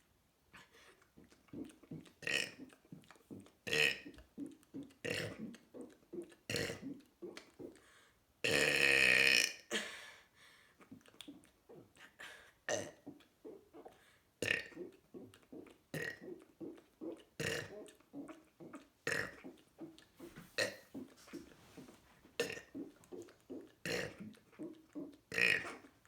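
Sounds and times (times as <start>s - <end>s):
person burping: 22.4s - 22.8s.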